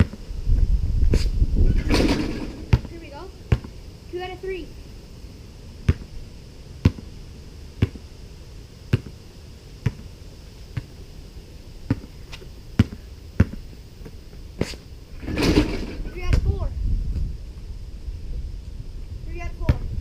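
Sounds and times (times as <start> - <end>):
basketball bouncing: 1.8 - 2.9, 3.5 - 3.7, 5.9 - 6.1, 7.8 - 8.0, 8.9 - 9.2, 9.8 - 10.1, 11.9 - 12.1, 12.8 - 14.2.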